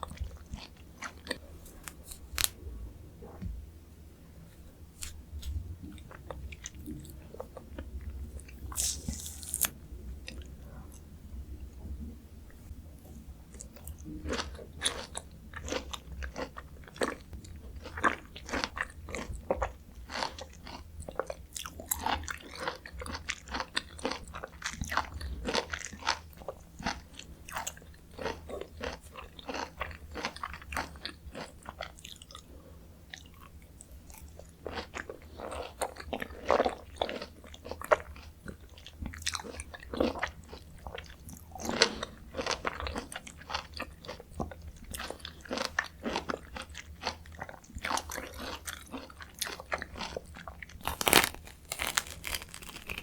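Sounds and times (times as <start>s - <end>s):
close chewing with wet mouth clicks: 13.5s - 32.5s, 33.1s - 53.0s.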